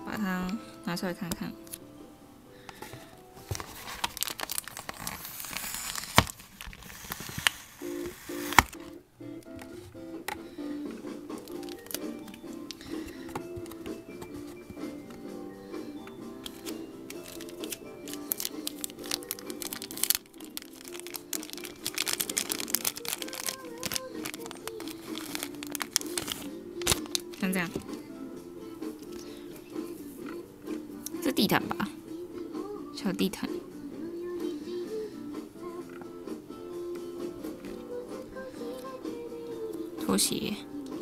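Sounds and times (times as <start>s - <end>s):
soft background music: 0.0s - 6.3s, 7.0s - 41.0s
plastic packaging crinkling: 3.4s - 8.9s, 11.4s - 13.8s, 16.4s - 27.9s
plastic pieces clicking: 11.4s - 13.9s, 16.4s - 27.4s.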